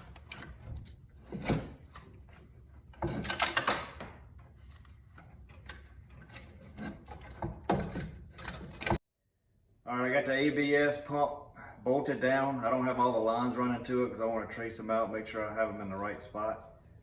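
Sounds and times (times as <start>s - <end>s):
metal clunks and clatter: 0.0s - 4.4s, 5.4s - 9.0s.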